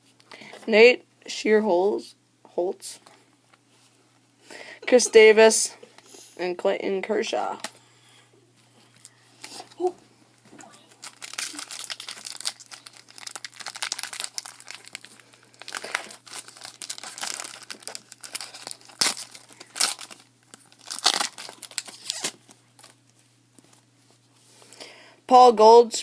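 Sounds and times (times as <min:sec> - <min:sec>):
plastic wrapper crinkling and tearing: 0:10.9 - 0:23.2.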